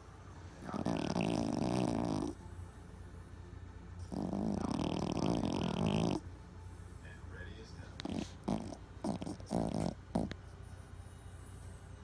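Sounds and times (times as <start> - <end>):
dog snoring: 0.6 - 2.5, 4.0 - 6.3, 7.9 - 10.8.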